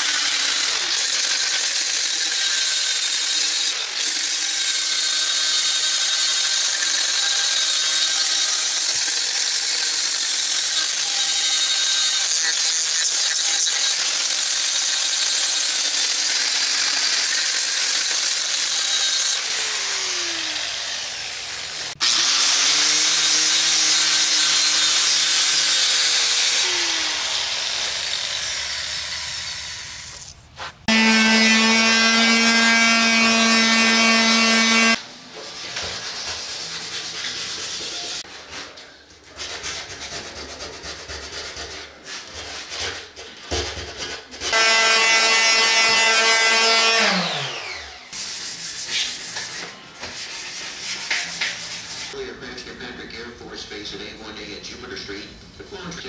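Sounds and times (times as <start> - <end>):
power saw grinding through countertop: 0.0 - 30.2, 30.8 - 35.0, 44.5 - 48.2
saw motor whining: 0.0 - 30.3, 30.9 - 35.0, 44.5 - 48.1
rubbing and scraping of material: 30.2 - 30.9, 34.9 - 44.6, 48.1 - 52.2.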